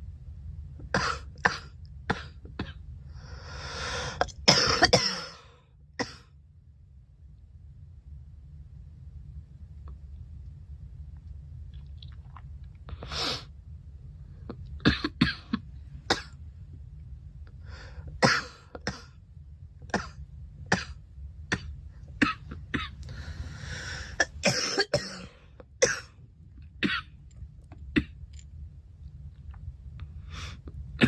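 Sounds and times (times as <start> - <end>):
girl coughing: 4.2 - 5.4, 14.8 - 16.3, 18.2 - 19.1, 21.5 - 23.0, 24.2 - 26.1.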